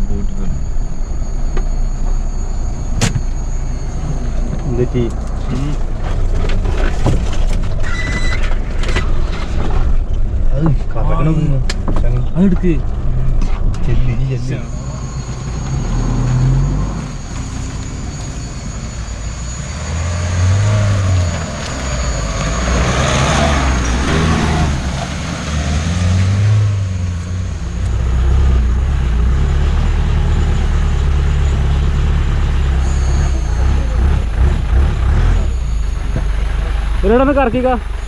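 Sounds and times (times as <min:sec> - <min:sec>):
engine revving: 0:11.4 - 0:38.0
loud rushing noise: 0:13.1 - 0:27.6.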